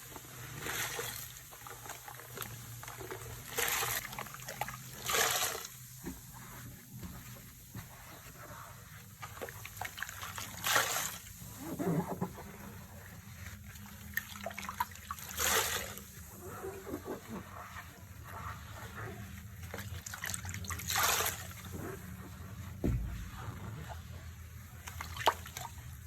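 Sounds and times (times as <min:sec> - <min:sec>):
cleaning solution trickling and splashing: 0:00.1 - 0:06.2, 0:09.0 - 0:11.6, 0:12.4 - 0:16.4, 0:19.6 - 0:21.8, 0:24.8 - 0:26.0.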